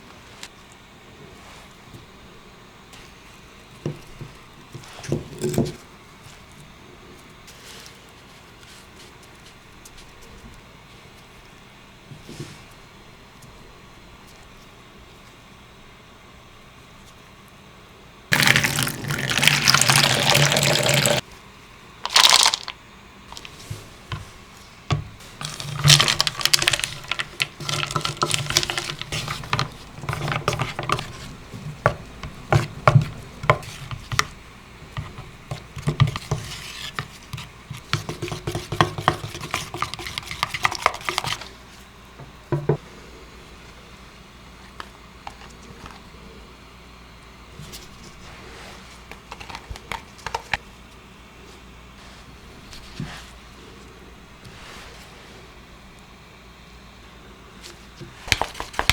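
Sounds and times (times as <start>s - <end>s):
liquid pouring: 18.3s - 21.2s.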